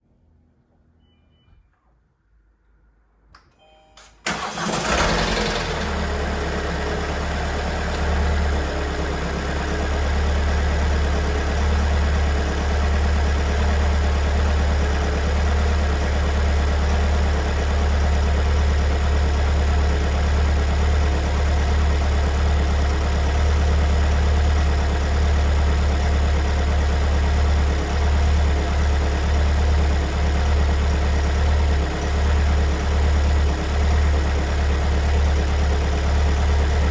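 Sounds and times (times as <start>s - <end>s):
engine cranking: 4.3s - 6.0s
diesel engine idling: 4.3s - 36.9s.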